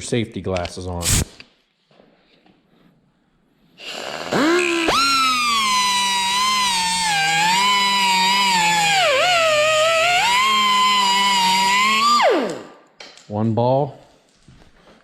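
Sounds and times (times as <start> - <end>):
power cutting tool whining: 3.8 - 12.8.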